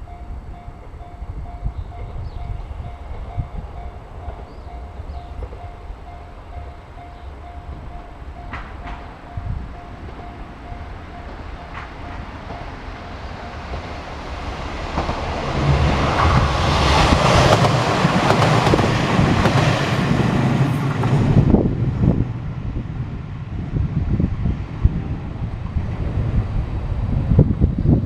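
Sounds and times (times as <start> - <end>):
diesel railcar passing: 0.0 - 28.0
train wheels clicking over rails: 7.9 - 21.7.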